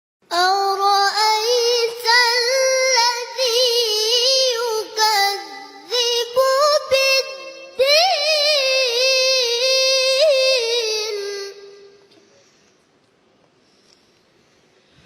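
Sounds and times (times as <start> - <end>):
child chanting: 0.3 - 12.0.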